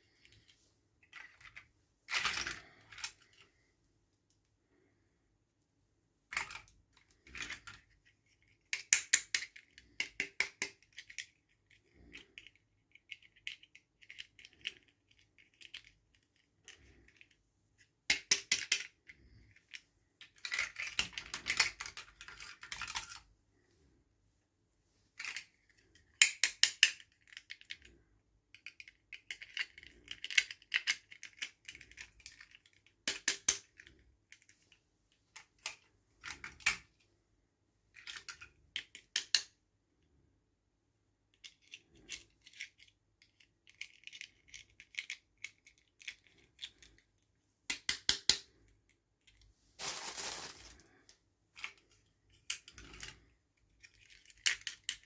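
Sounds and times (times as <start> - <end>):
plastic packaging clicks and rattles: 49.3 - 51.8
packaging rustling or tearing: 49.8 - 51.0.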